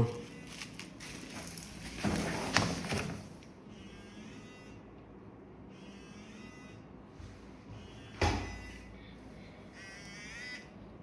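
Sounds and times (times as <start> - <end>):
packaging rustling: 0.2 - 3.5
mobile phone vibrating: 3.7 - 4.9, 5.7 - 11.0.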